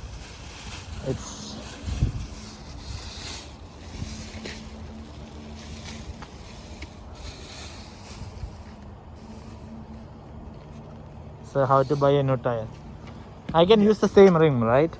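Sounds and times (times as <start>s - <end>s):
wind buffeting microphone: 0.0s - 9.0s
steady low rumble: 0.0s - 11.6s.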